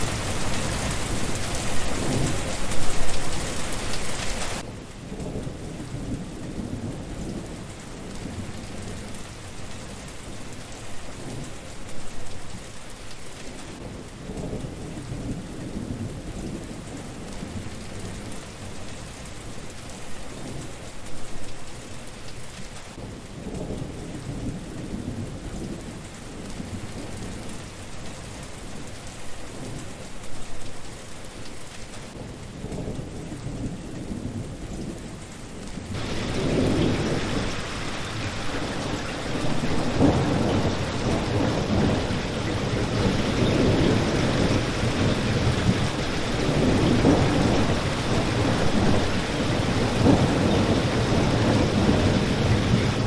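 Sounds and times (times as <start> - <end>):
thunder rumbling: 0.0 - 10.5, 35.8 - 53.0
steady rain falling: 0.0 - 53.0.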